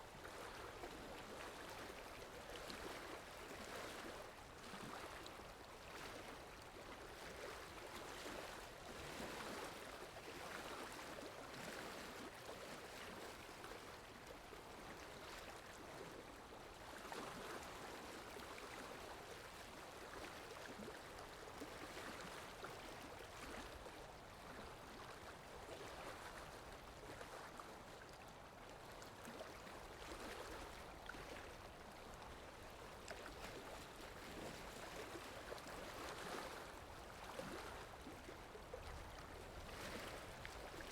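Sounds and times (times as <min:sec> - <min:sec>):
sea water lapping: 0:28.8 - 0:40.9.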